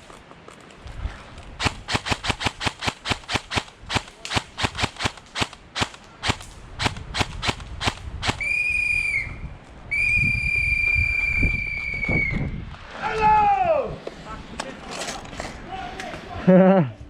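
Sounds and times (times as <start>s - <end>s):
airsoft guns firing: 1.6s - 8.5s.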